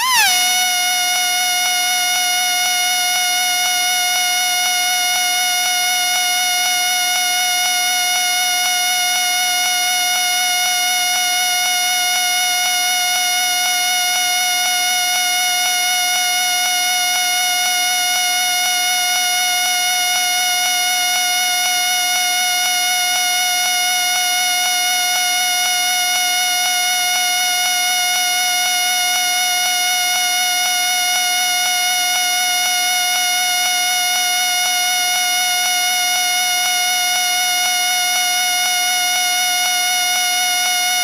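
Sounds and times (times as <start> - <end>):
shrill whistle note: 0.0 - 1.6.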